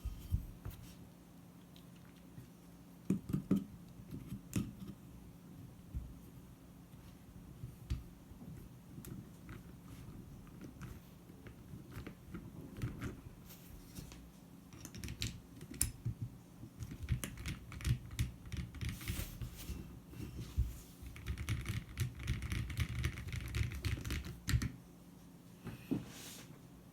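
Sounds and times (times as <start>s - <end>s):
mechanical keyboard typing: 16.8s - 19.0s, 21.1s - 24.7s.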